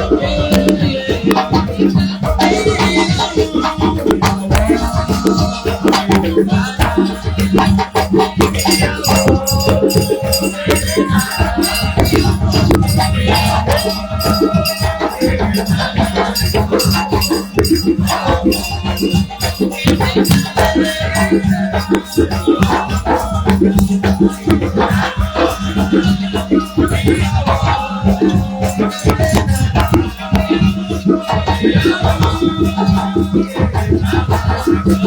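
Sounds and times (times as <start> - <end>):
upbeat music with shakers and drums: 0.0 - 35.0.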